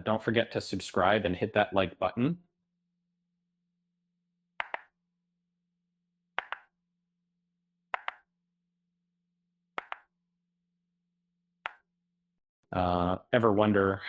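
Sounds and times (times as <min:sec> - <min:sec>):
pairs of sharp clicks: 0:04.6 - 0:04.9, 0:06.4 - 0:06.7, 0:08.0 - 0:08.2, 0:09.8 - 0:10.1.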